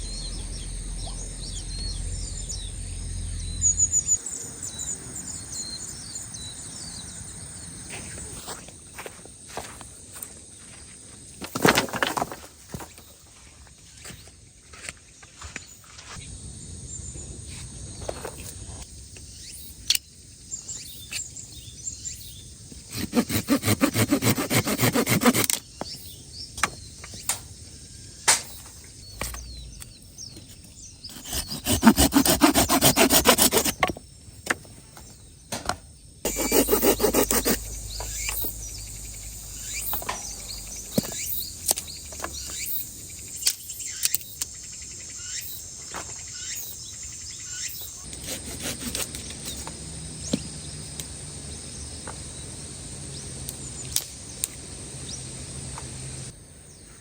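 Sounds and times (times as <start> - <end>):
hand saw cutting wood: 22.9 - 25.6, 31.1 - 33.9, 36.3 - 41.2, 48.1 - 49.5.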